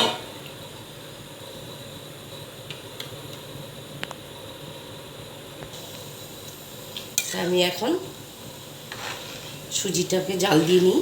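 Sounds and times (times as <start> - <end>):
pot of milk hissing: 5.6 - 11.0.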